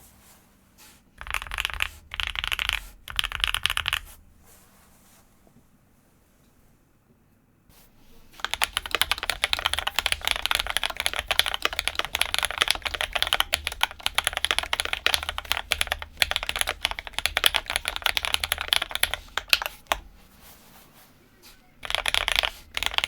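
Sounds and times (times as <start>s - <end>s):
mechanical keyboard typing: 1.2s - 4.2s, 8.4s - 20.1s, 21.8s - 23.0s.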